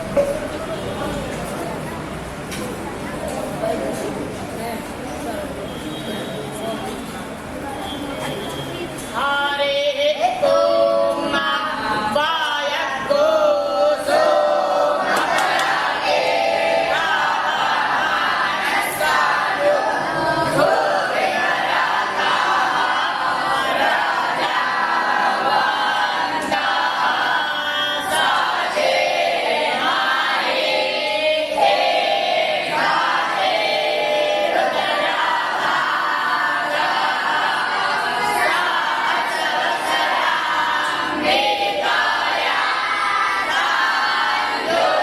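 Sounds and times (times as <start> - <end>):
students chanting together: 10.2 - 45.0.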